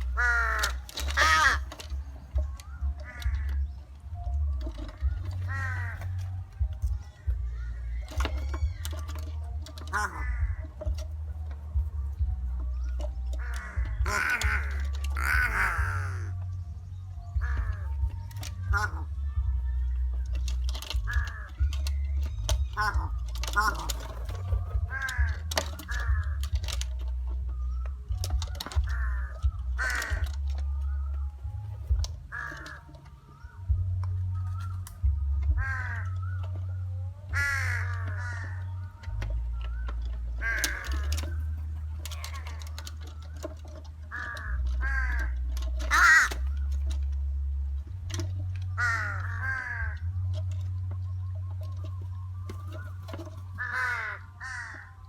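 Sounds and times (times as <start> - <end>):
crows cawing: 0.0 - 11.2, 12.8 - 16.5, 17.3 - 19.5, 20.7 - 27.1, 28.6 - 31.2, 32.0 - 33.8, 35.5 - 47.2, 48.6 - 50.4, 52.5 - 55.0.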